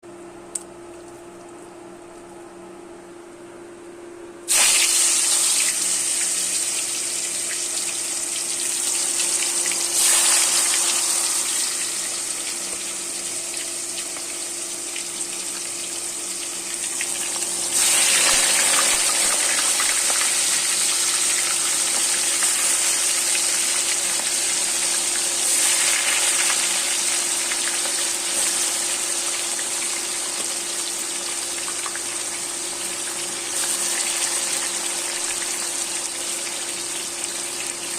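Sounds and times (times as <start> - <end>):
steady hum: 0.1 - 29.4
chicken sizzling in hot oil: 4.5 - 37.9.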